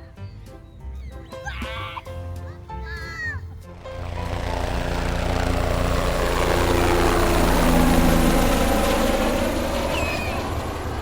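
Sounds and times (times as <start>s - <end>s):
passing engine: 3.6s - 11.0s.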